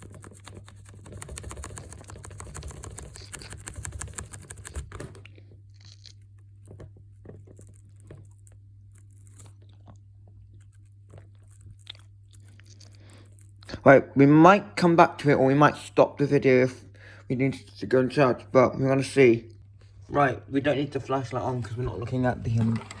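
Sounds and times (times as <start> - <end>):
close scratching and rubbing clicks: 0.0 - 13.7, 21.2 - 23.0
steady low hum: 0.0 - 23.0.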